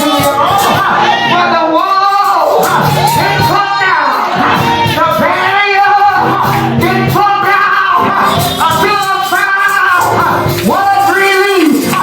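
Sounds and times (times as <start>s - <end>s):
keyboard: 0.0s - 12.0s
person singing: 0.0s - 12.0s
drums: 4.4s - 9.3s.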